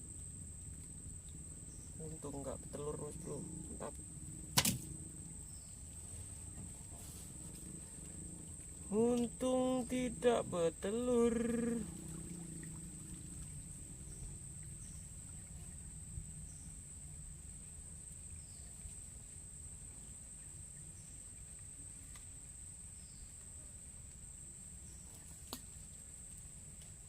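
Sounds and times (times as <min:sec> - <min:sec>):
low background rumble: 0:00.0 - 0:25.1
insects droning: 0:00.0 - 0:27.0
sharp click: 0:04.6 - 0:04.9.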